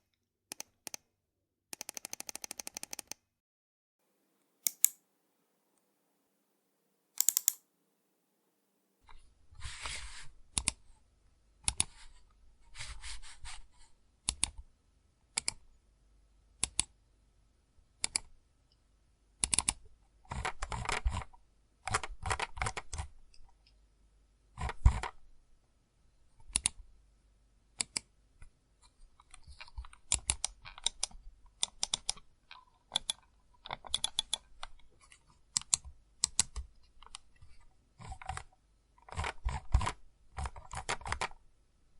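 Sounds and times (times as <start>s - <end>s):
computer mouse clicks: 0.5s - 1.1s, 1.7s - 3.2s, 4.6s - 5.0s, 7.2s - 7.6s, 10.5s - 10.8s, 11.6s - 12.0s, 14.3s - 14.6s, 15.4s - 15.6s, 16.6s - 16.9s, 18.0s - 18.3s, 19.4s - 19.8s, 26.4s - 26.8s, 27.8s - 28.1s, 29.2s - 32.2s, 32.9s - 34.8s, 35.5s - 37.3s, 39.1s - 41.4s.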